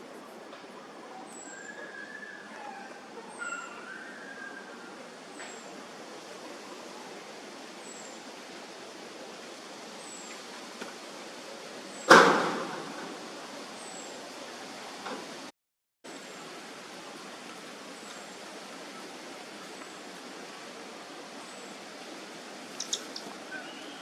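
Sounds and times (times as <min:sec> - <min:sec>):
background hiss: 0:00.0 - 0:15.5, 0:16.1 - 0:24.0
loud sudden bang: 0:12.1 - 0:13.2
short chirping calls: 0:22.7 - 0:24.0.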